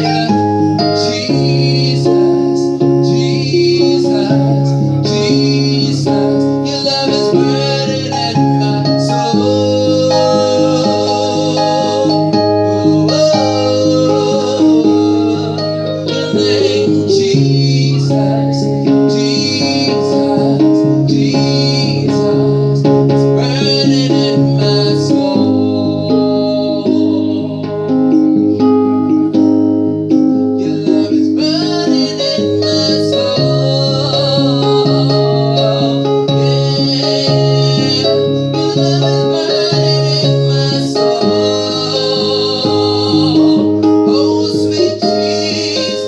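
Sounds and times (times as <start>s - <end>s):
person singing: 0.0s - 29.4s, 30.1s - 46.0s
keyboard and guitar chords: 0.0s - 46.0s.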